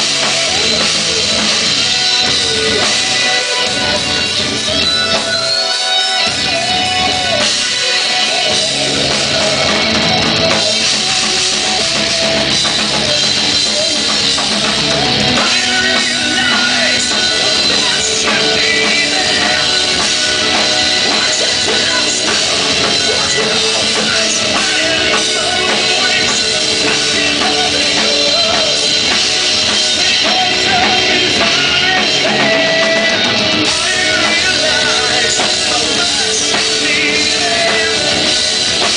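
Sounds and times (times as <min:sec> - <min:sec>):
drum kit: 0:00.0 - 0:38.9
heavy metal band playing live: 0:00.0 - 0:38.9.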